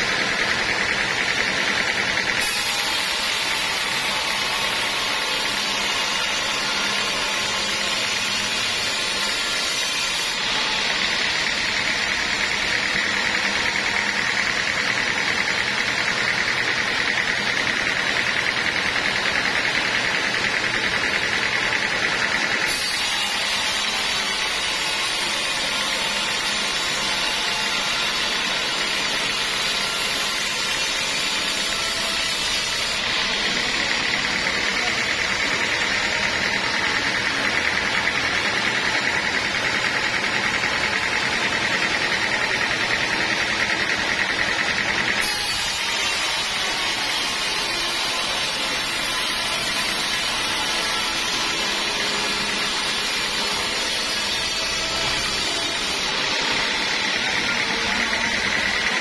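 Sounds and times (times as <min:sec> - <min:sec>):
sawmill saw cutting wood: 0:00.0 - 0:59.0.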